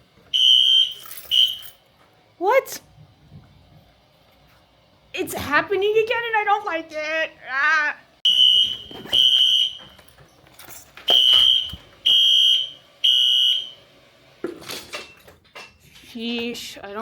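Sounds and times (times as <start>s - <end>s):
fire alarm beeping: 0.3s - 1.8s, 8.3s - 10.2s, 11.1s - 13.9s.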